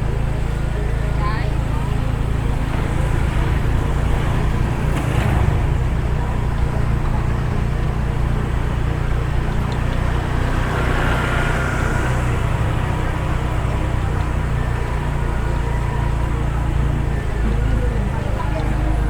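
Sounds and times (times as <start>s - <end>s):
car engine rumble: 0.0s - 19.0s
road noise: 0.0s - 19.0s.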